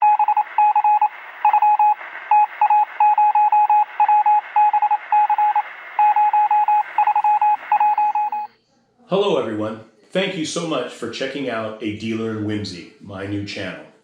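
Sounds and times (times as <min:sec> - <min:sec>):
morse code beeping tone: 0:00.0 - 0:08.5
radio hiss: 0:00.2 - 0:08.4.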